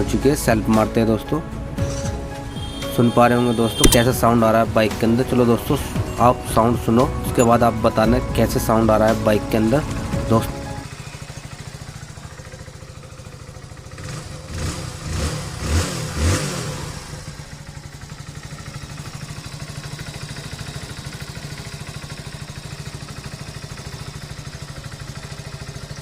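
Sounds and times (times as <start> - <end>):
motorcycle engine idling and revving: 0.0 - 26.0.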